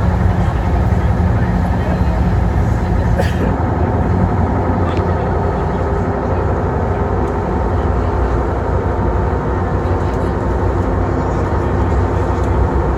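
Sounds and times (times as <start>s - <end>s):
faint steady hum: 0.0s - 3.4s
boat engines rumbling: 0.0s - 3.6s.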